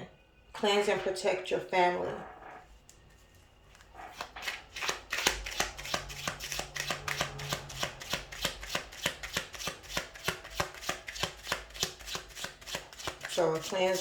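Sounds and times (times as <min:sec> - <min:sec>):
cards being shuffled: 0:03.7 - 0:14.0.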